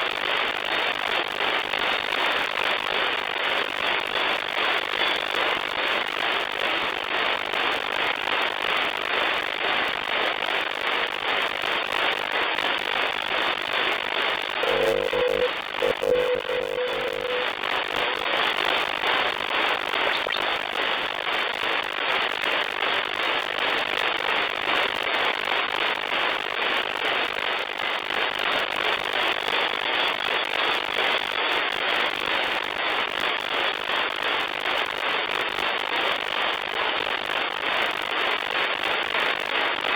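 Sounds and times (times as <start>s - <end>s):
radio static hissing: 12.7s - 24.4s
steady tone with overtones: 14.6s - 18.6s.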